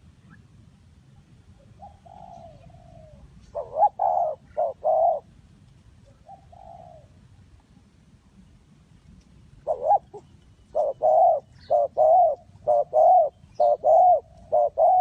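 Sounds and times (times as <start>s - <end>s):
dove cooing: 1.6s - 5.3s, 6.0s - 7.2s, 9.6s - 15.0s.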